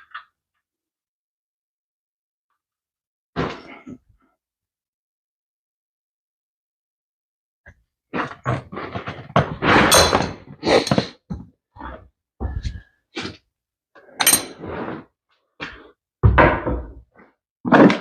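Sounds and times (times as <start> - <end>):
hand tools and metal parts clanking: 9.8 - 11.0, 14.1 - 14.7.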